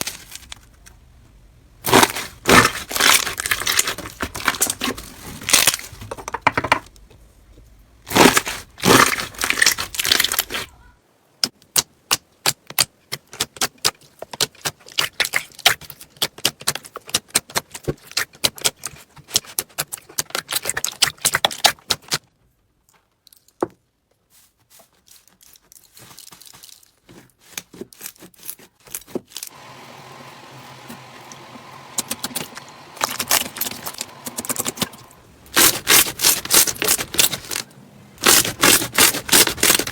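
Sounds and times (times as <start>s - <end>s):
slime crackling: 31.7s - 39.9s
slime squishing: 31.7s - 39.9s.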